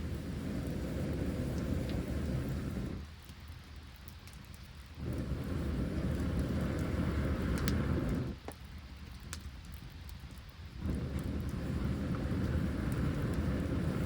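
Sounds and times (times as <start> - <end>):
wind rumbling on microphone: 0.0 - 3.0, 5.0 - 8.4, 10.3 - 14.0
campfire crackling: 0.0 - 14.0.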